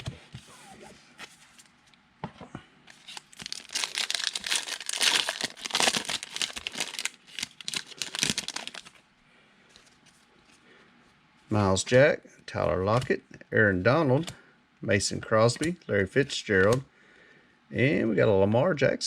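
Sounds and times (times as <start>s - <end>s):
foil wrapper tearing and crinkling: 2.9s - 9.0s.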